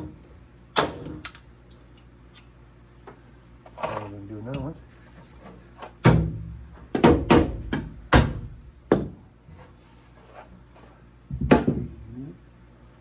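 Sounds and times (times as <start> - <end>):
sharp knocks on plywood: 6.1 - 9.2.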